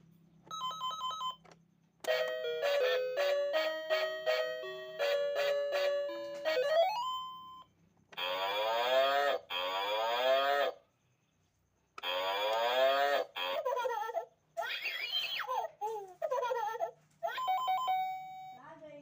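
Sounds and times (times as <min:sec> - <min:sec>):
drawn-out animal calls: 0:08.2 - 0:10.8, 0:12.0 - 0:13.6.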